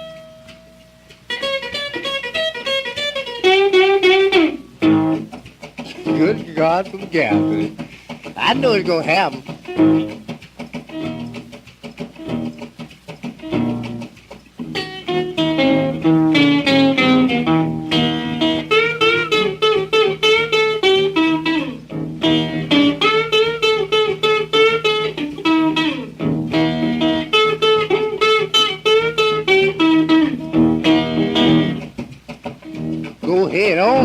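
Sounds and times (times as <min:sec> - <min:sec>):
solo blues guitar: 0:00.0 - 0:34.0.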